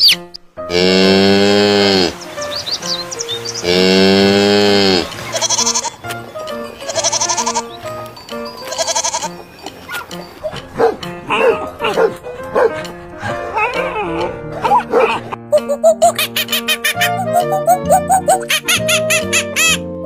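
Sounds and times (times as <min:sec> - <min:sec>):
farm animal calls: 0:00.0 - 0:12.7
background music: 0:00.0 - 0:20.0
wavering bleats: 0:00.7 - 0:02.2, 0:03.6 - 0:06.1, 0:06.7 - 0:08.0, 0:08.6 - 0:10.0.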